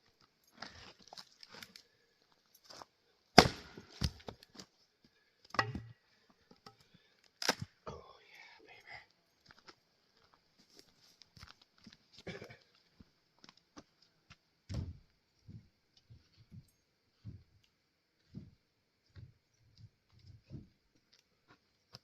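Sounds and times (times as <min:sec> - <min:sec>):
soft dull thuds: 0:14.7 - 0:17.5.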